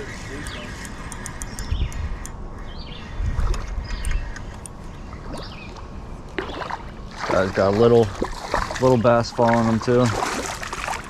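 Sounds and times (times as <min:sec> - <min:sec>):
bird chirps: 0:00.0 - 0:06.7.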